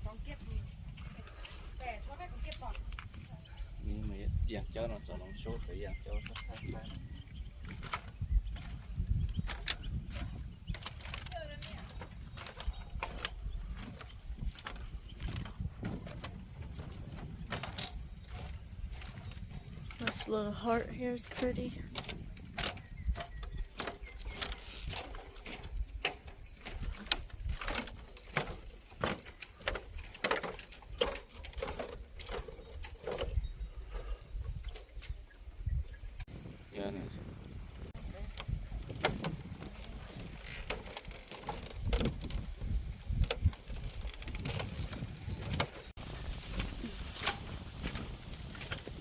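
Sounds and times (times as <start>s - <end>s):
footsteps on bamboo walkway: 0.0s - 4.2s, 6.2s - 36.3s, 37.9s - 49.0s
wind rumble on microphone: 0.0s - 49.0s
sharp clicks and knocks: 9.4s - 33.4s.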